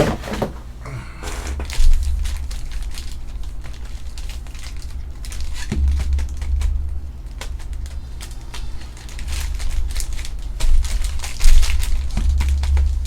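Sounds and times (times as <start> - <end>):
foil wrappers crinkling: 0.0 - 13.0
steady low hum: 0.0 - 13.0.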